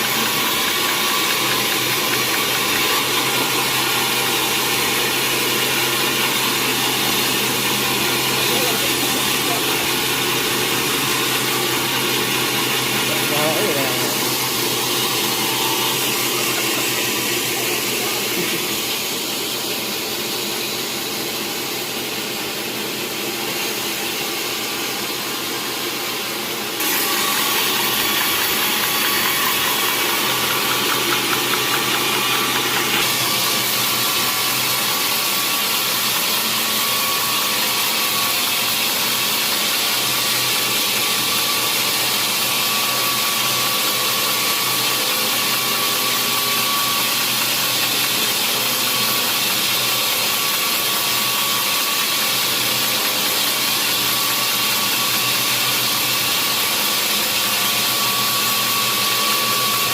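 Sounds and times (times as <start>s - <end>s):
sawmill machinery running: 0.0s - 59.9s.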